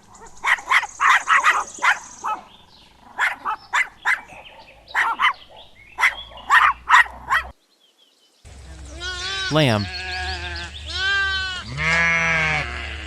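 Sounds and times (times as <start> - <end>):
puppy yapping: 3.2 - 7.5.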